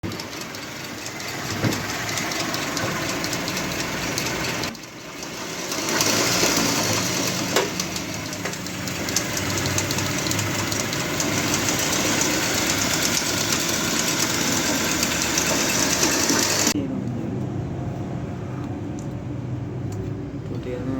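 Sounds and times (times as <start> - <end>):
car engine ticking: 0.0 - 16.8.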